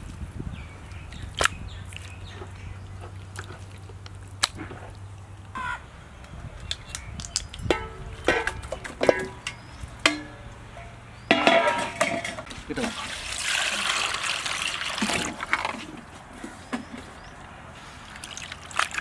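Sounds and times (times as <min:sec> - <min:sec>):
crow-like caws: 0:05.5 - 0:05.8.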